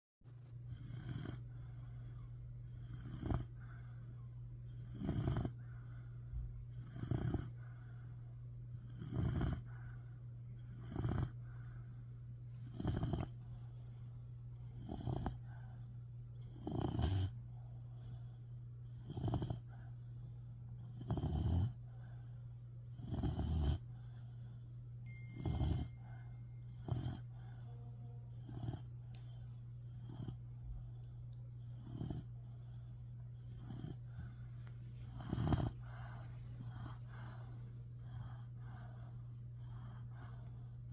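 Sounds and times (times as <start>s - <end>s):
puppy snoring: 0.6s - 40.9s
low hum: 23.8s - 40.9s.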